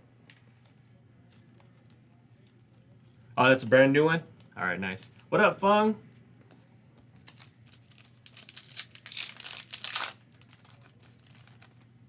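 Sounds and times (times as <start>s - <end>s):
foil wrapper tearing and crinkling: 7.3s - 11.9s.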